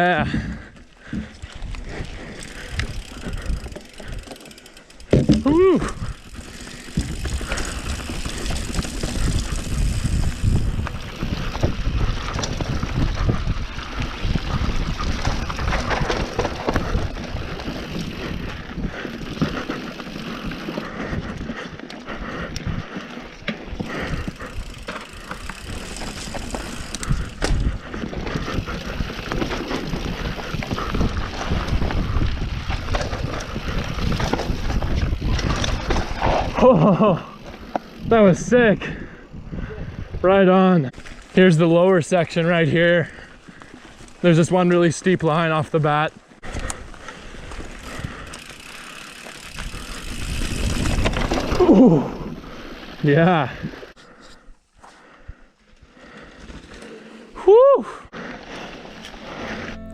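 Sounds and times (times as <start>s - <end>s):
bike tyres rushing on dirt: 0.0s - 54.0s
bike knocking and rattling: 0.2s - 38.6s, 45.2s - 53.5s.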